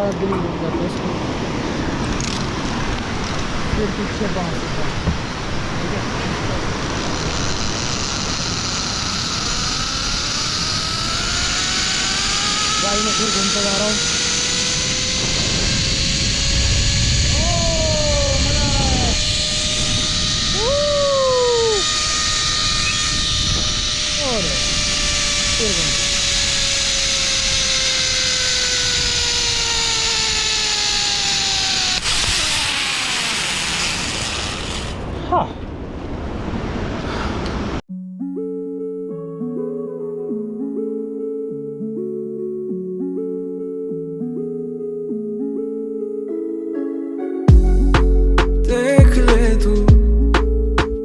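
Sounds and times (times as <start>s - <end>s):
rising whine: 0.0s - 35.3s
wind noise: 0.0s - 37.8s
zip-line trolley on cable: 1.8s - 35.3s.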